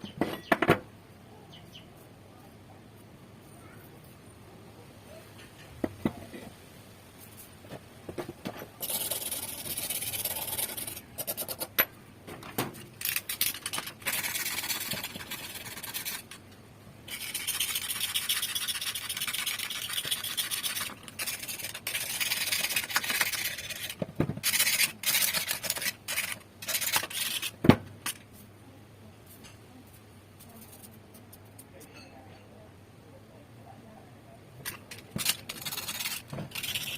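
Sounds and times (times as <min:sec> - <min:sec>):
rust scraping off metal: 0:08.2 - 0:11.8, 0:12.4 - 0:16.4, 0:17.1 - 0:28.2, 0:34.7 - 0:36.9.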